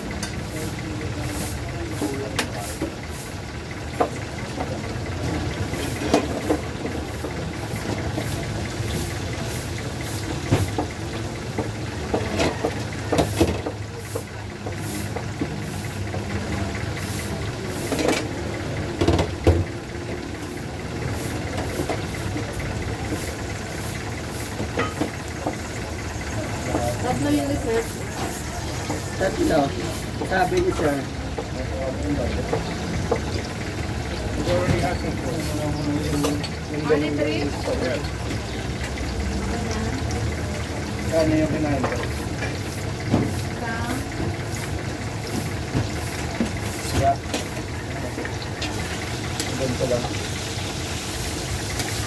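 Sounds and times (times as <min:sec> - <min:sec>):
low engine-like rumble: 0:00.0 - 0:52.0.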